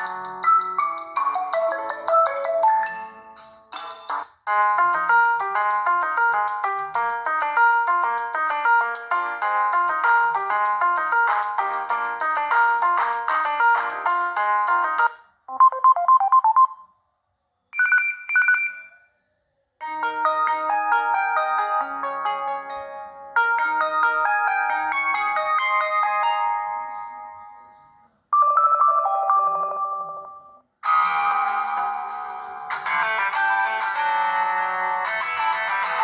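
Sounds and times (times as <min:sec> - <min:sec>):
phone ringtone melodies: 0:00.0 - 0:03.4, 0:04.5 - 0:16.8, 0:23.4 - 0:30.7
repeated beeps: 0:15.5 - 0:16.9, 0:17.8 - 0:19.0.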